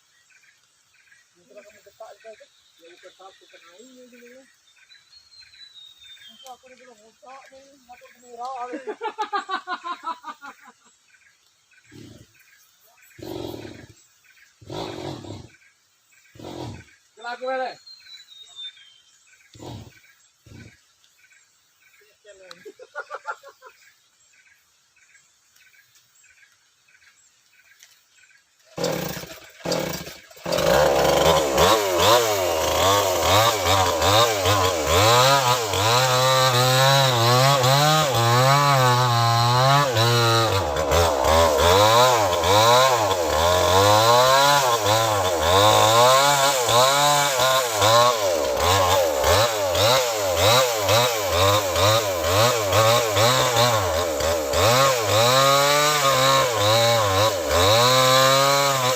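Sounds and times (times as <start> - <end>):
chainsaw revving while cutting: 11.8 - 12.5, 13.1 - 17.0, 18.1 - 20.9, 28.7 - 58.9.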